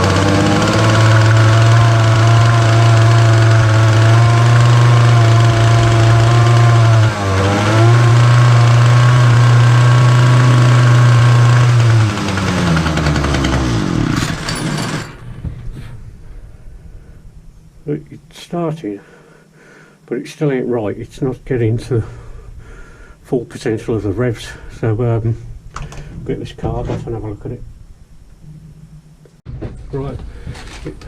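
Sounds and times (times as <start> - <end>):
small two-stroke engine running: 0.0 - 15.2.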